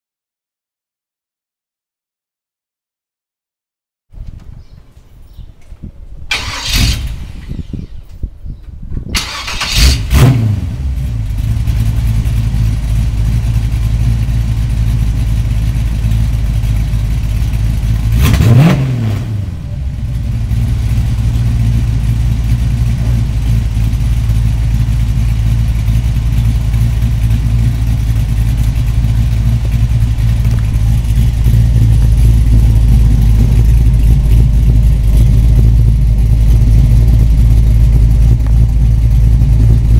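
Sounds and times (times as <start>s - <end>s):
engine revving and idling: 9.2s - 39.9s.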